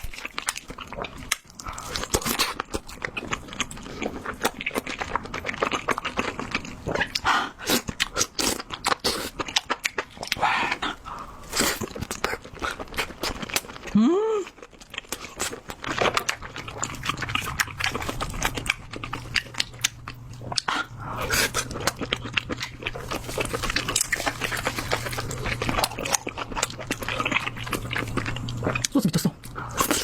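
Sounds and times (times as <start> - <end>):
wet chewing and lip smacking: 0.0 - 30.0
low steady hum: 9.8 - 30.0.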